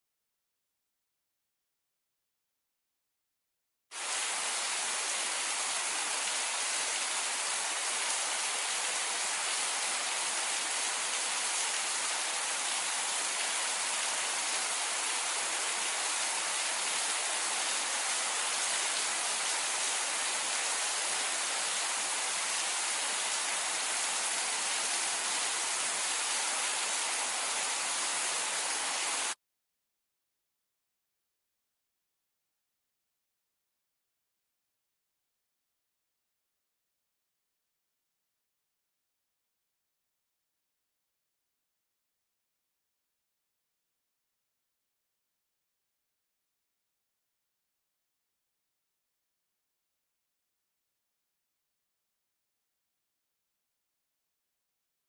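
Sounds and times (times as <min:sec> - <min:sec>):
steady rain falling: 0:04.0 - 0:29.4.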